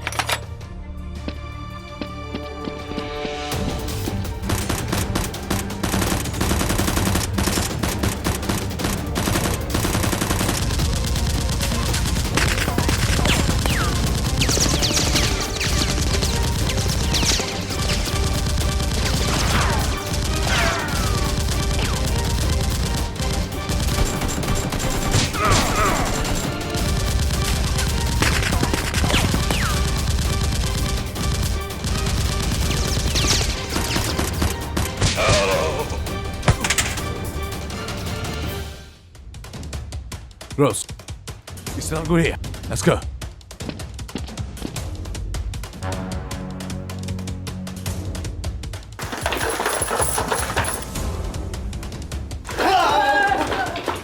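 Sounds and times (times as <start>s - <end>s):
background music: 0.0s - 54.0s
gunfire bursts: 4.3s - 35.3s.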